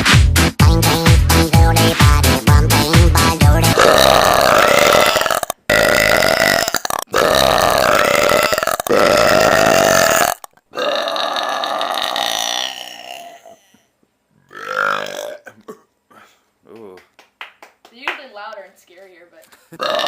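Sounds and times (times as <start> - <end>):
person belching loudly: 3.6 - 13.8, 14.5 - 15.8, 19.8 - 20.0.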